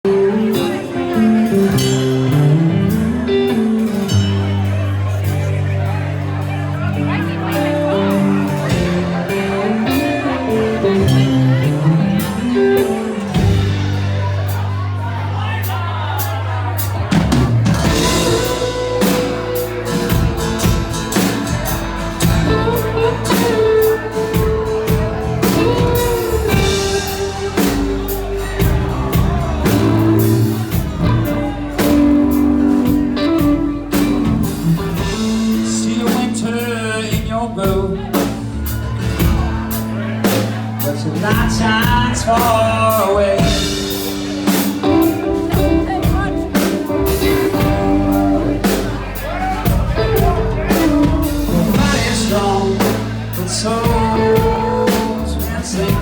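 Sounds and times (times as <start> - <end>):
band playing a song: 0.0 - 56.0
person singing: 22.2 - 56.0.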